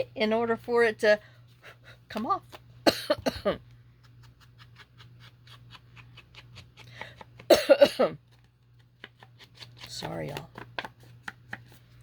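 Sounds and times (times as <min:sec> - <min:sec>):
woman coughing: 0:02.8 - 0:03.6, 0:07.5 - 0:08.2.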